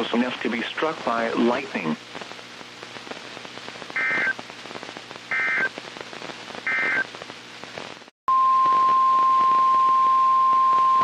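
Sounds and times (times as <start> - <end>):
static hiss: 0.0 - 8.1.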